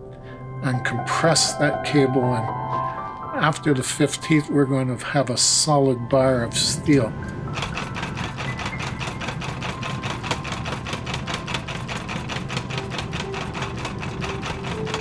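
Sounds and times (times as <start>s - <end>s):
power hammer pounding metal: 7.6s - 15.0s.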